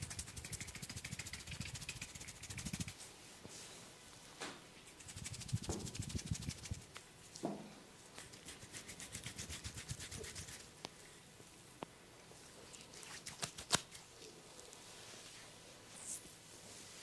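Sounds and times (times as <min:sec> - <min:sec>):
scratching and rubbing hair: 0:00.0 - 0:03.7, 0:04.8 - 0:07.4, 0:08.0 - 0:10.7, 0:12.6 - 0:17.0.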